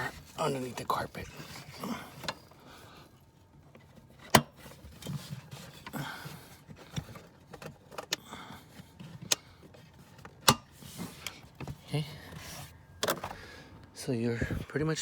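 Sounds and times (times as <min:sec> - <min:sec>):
rustling handling noise: 0:00.0 - 0:13.5.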